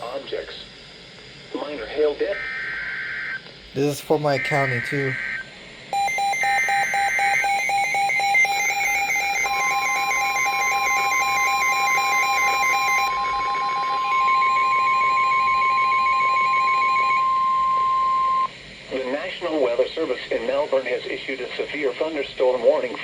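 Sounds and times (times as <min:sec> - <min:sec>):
steady single-pitch alarm tone: 0:02.3 - 0:18.6
rapid beeping: 0:06.0 - 0:18.5.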